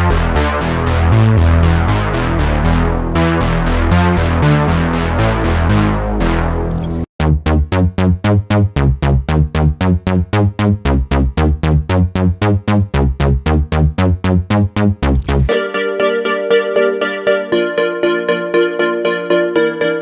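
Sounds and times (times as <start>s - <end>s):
synthesizer bass line: 0.0s - 15.7s.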